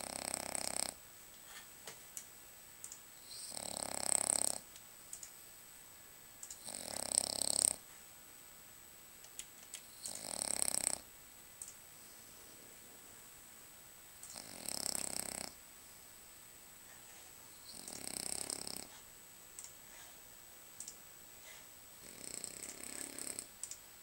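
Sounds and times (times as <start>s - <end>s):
dog snoring: 0.0s - 1.0s, 3.2s - 4.7s, 6.6s - 7.8s, 9.9s - 11.1s, 14.3s - 15.6s, 17.6s - 19.0s, 22.0s - 23.5s
faint snuffles and clicks: 6.4s - 8.1s, 9.2s - 11.0s, 14.2s - 15.6s, 16.8s - 23.8s.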